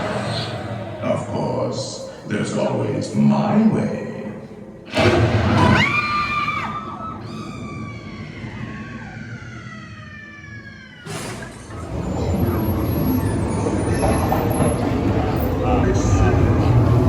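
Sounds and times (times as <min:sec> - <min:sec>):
crash: 0:04.9 - 0:06.0
crowd murmuring: 0:11.8 - 0:17.0.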